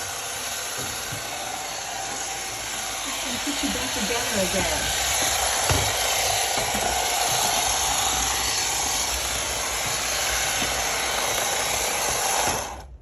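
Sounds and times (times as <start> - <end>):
robot vacuum whirring: 0.0 - 13.0
knock: 5.2 - 6.0.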